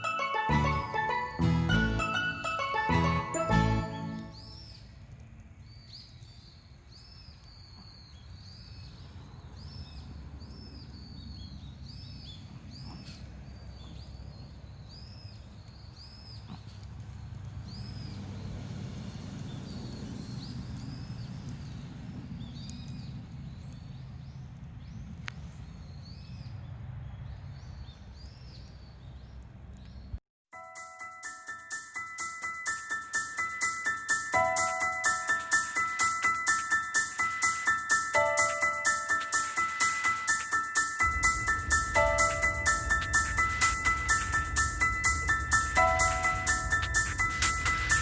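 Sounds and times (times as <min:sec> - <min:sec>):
bird calling: 0:32.2 - 0:48.0
steady low rumble: 0:41.0 - 0:48.0.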